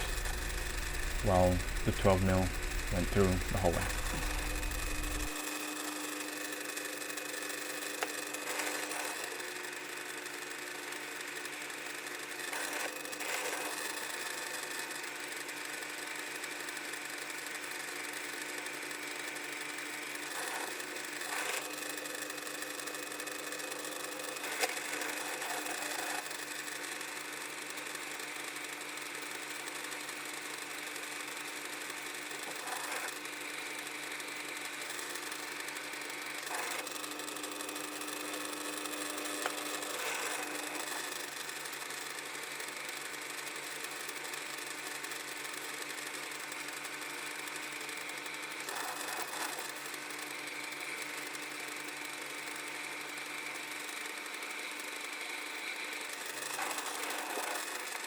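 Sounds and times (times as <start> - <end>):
drill press drilling metal: 0.0 - 5.4.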